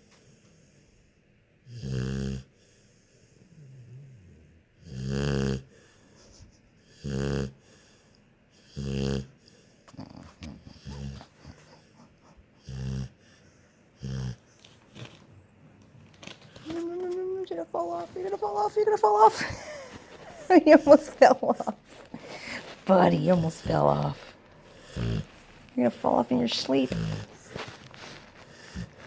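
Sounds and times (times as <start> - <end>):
pet snoring: 1.6 - 6.1, 6.8 - 15.3, 19.5 - 29.0
faint breathing: 7.6 - 8.4, 9.4 - 14.7, 21.8 - 22.9, 26.9 - 29.0.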